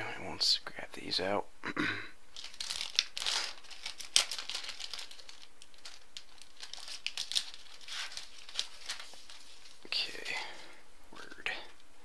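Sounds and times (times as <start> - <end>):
plastic sleeves crinkling: 2.3 - 11.9.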